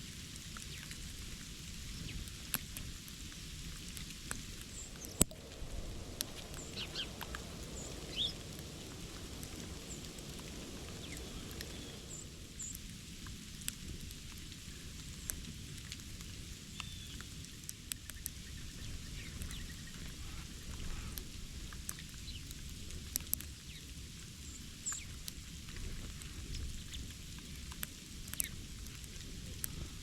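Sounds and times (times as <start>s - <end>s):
light ticks: 0.3s - 30.0s
small birds chirping: 3.3s - 12.9s, 16.7s - 22.6s, 23.2s - 28.6s.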